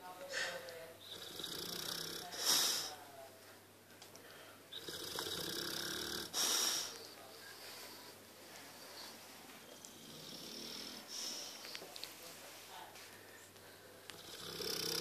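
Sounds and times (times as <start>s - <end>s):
dog snoring: 1.0s - 2.9s, 4.7s - 7.0s, 9.7s - 11.5s, 14.1s - 15.0s.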